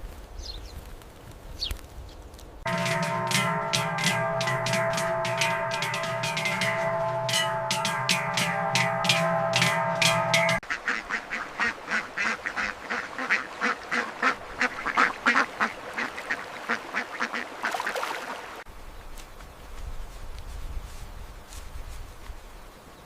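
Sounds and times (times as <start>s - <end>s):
music: 2.7s - 10.6s
ducks quacking: 2.7s - 18.5s.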